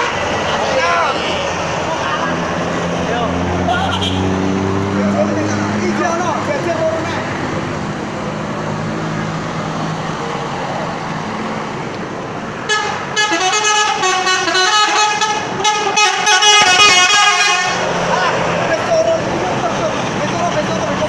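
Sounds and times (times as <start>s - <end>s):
multi-tone musical bus horn: 3.6s - 4.4s, 12.6s - 17.9s.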